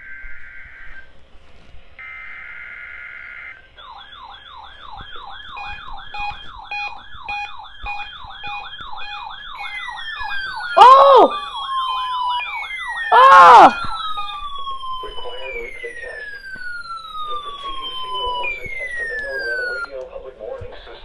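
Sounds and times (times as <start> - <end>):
electronic warble siren: 0.0 - 1.2, 2.0 - 19.9
short siren-like burst: 2.0 - 19.9
falling-pitch tones: 9.6 - 15.0.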